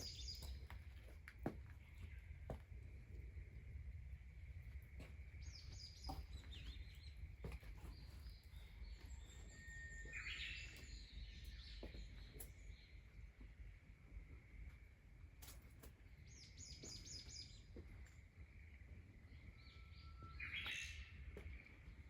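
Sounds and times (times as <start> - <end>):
birds singing: 0.0 - 2.7, 5.0 - 13.7, 16.0 - 22.0
faint steady hum: 0.0 - 22.0.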